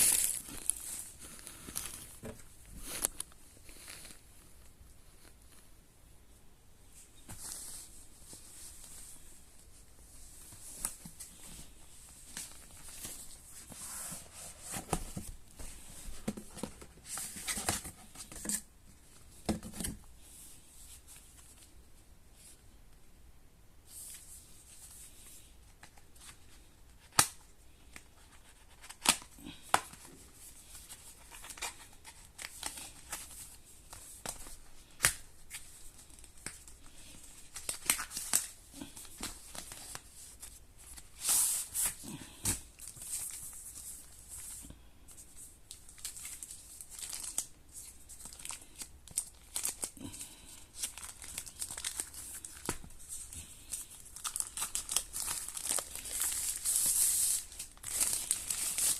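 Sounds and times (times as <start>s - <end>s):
wrapping rustling and tearing: 0.0s - 5.6s, 28.0s - 58.9s.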